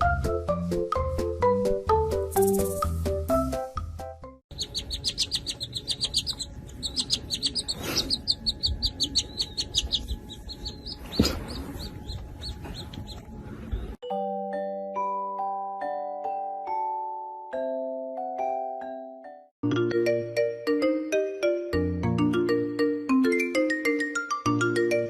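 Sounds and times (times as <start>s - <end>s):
background music: 0.0s - 25.0s
baby birds peeping: 4.5s - 14.0s.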